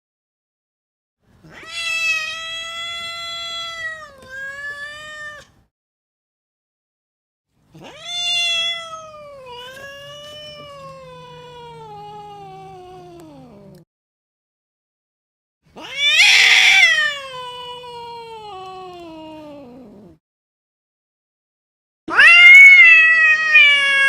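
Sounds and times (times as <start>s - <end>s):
cat yowling: 1.4s - 5.5s, 7.8s - 13.8s, 15.8s - 20.1s, 22.1s - 24.0s.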